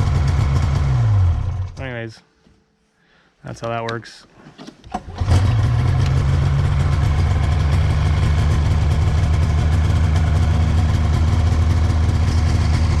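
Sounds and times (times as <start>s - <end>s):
snowmobile engine idling: 5.4s - 13.0s.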